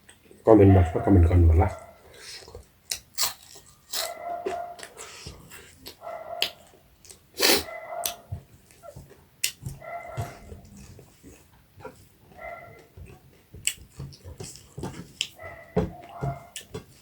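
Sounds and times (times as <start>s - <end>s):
chewing and lip smacks: 2.1s - 7.3s, 8.0s - 15.4s
wet slurp: 7.4s - 7.7s.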